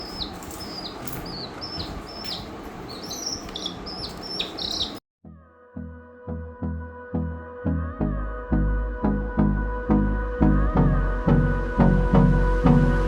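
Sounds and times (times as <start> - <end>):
bird chirping: 0.0 - 5.0.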